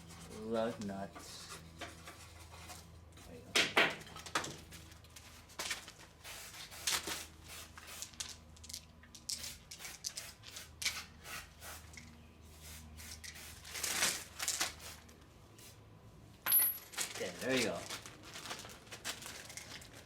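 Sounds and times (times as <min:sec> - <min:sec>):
plastic bag rustling: 0:13.6 - 0:15.0, 0:16.8 - 0:20.0.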